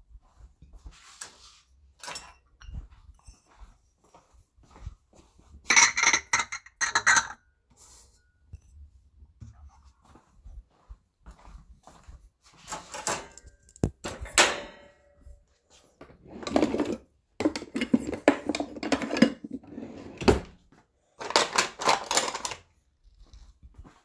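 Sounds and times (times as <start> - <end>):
ceramic plates clinking: 5.7 - 7.4, 16.3 - 19.8.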